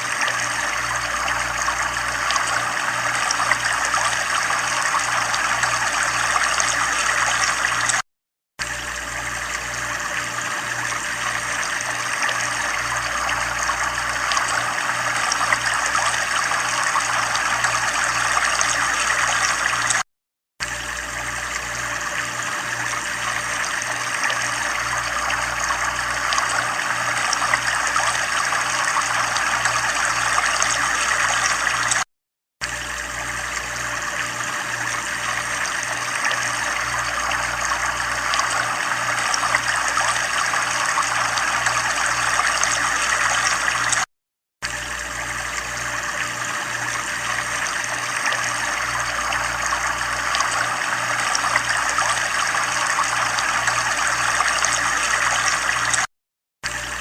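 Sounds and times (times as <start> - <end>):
trickling water: 0.0 - 8.0, 8.6 - 20.0, 20.6 - 57.0.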